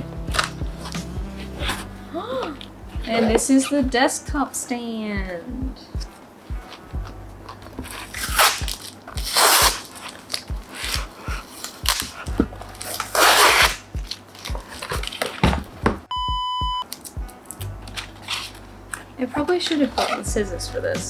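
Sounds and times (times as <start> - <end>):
background music with a beat: 0.0 - 4.4, 5.2 - 9.8, 10.5 - 12.9, 13.6 - 15.1, 15.8 - 18.2
cardboard packaging tearing: 7.5 - 15.8, 16.9 - 20.3
short electronic beep: 16.1 - 16.8.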